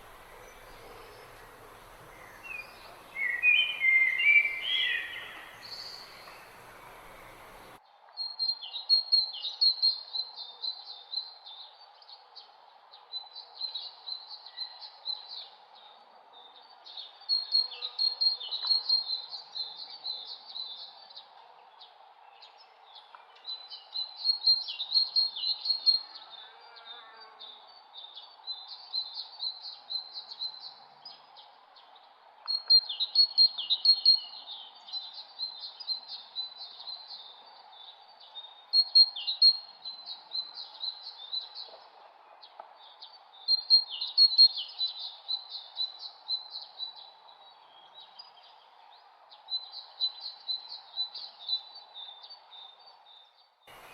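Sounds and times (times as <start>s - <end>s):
faint steady hum: 0.0s - 7.8s, 53.7s - 53.9s
songbird chirping: 0.0s - 53.9s.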